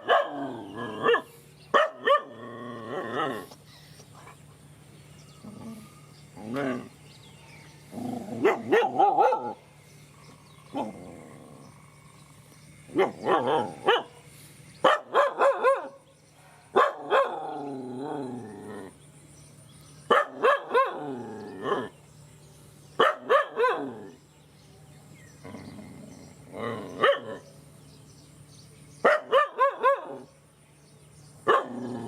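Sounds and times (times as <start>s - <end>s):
dog barking: 0.0s - 2.4s, 8.4s - 9.6s, 13.0s - 14.2s, 14.8s - 17.5s, 20.1s - 21.0s, 23.0s - 24.1s, 27.0s - 27.4s, 29.0s - 30.3s, 31.5s - 31.8s.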